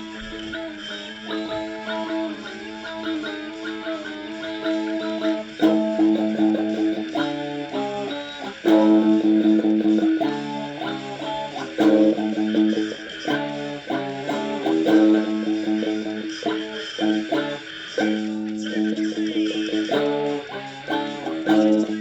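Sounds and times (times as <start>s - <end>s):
electric guitar strumming chords: 0.0s - 22.0s
bass guitar: 4.9s - 22.0s.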